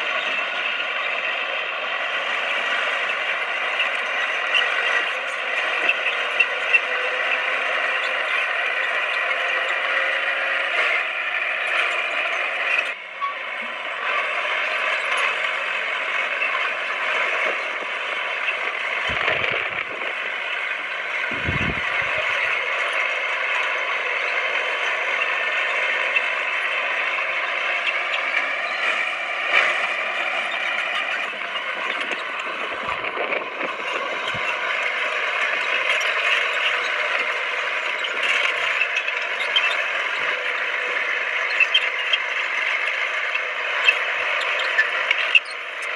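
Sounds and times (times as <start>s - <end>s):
clatter of steel tracks: 0.0s - 45.9s
diesel engine running: 0.0s - 45.9s.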